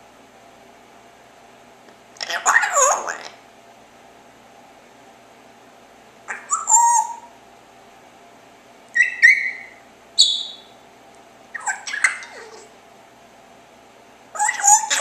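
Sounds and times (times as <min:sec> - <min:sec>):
parrot chirping and whistling: 0:06.3 - 0:07.3, 0:08.9 - 0:10.7, 0:11.5 - 0:12.7, 0:14.4 - 0:15.0.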